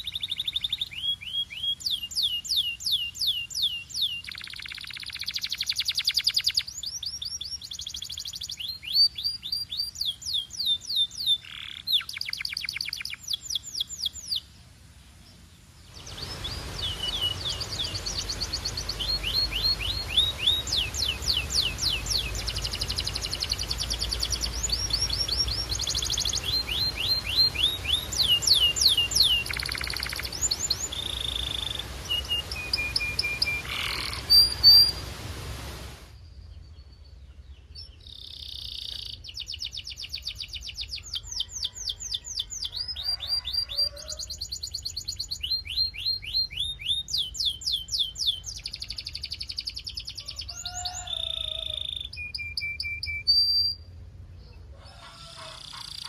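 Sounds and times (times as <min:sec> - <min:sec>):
canary singing: 0:00.0 - 0:14.5, 0:16.0 - 0:35.1, 0:37.8 - 0:56.0
background hiss: 0:00.0 - 0:42.6.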